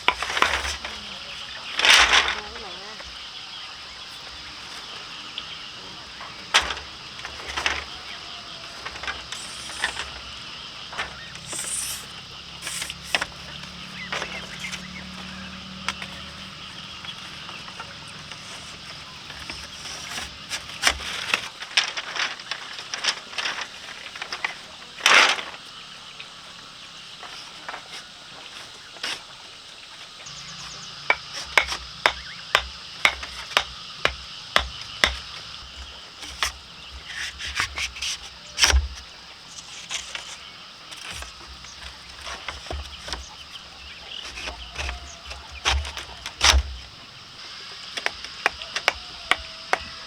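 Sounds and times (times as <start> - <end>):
sharp knocks and cracks: 0.0 - 3.2, 6.0 - 50.0.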